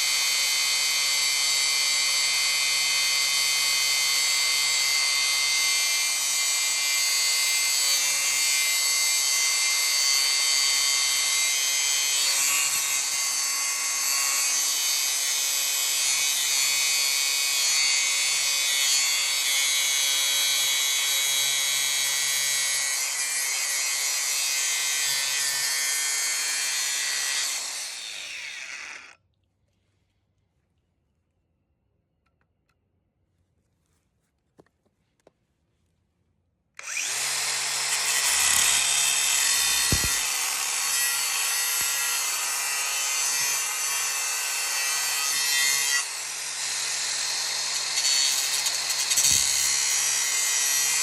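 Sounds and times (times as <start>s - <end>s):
angle grinder cutting steel: 2.7s - 29.2s, 36.8s - 51.0s
motor winding down: 36.8s - 41.4s.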